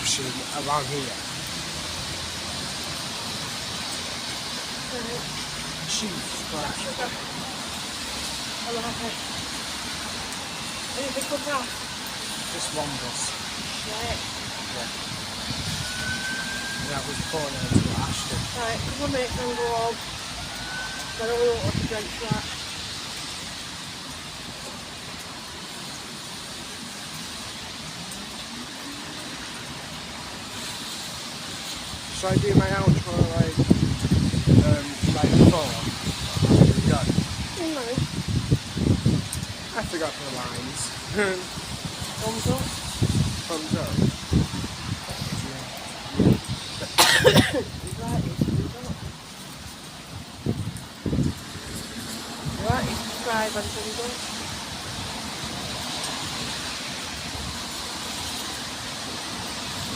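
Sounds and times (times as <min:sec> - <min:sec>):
passing traffic: 0:00.0 - 0:59.9
roadside background noise: 0:00.0 - 0:59.9.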